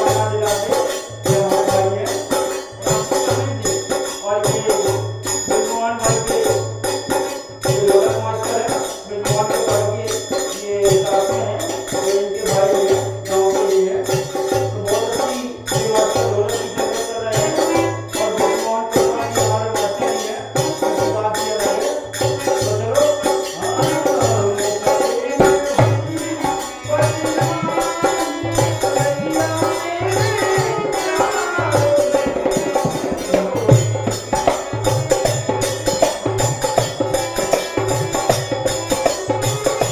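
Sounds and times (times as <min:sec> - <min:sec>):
jingling percussion: 0:00.0 - 0:39.9
wavering devotional melody: 0:00.0 - 0:39.9
steady low drum beat: 0:20.5 - 0:39.9.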